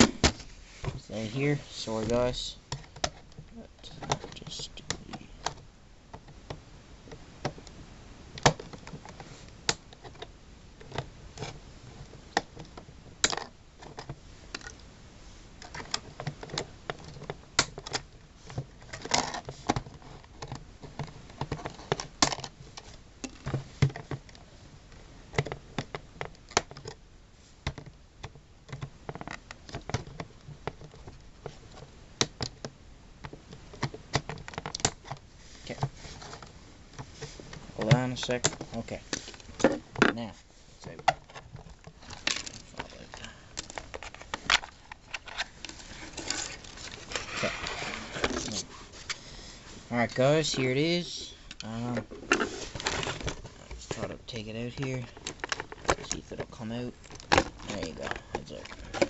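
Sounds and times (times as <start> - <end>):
hands unpacking cardboard packaging: 33.5 - 59.0.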